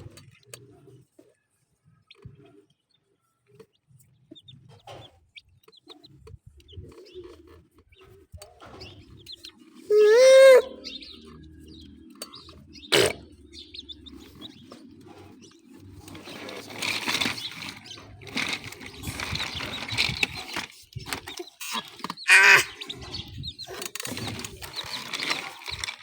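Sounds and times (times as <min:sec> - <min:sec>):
hen clucking: 0:04.3 - 0:26.0
rustling: 0:14.1 - 0:26.0.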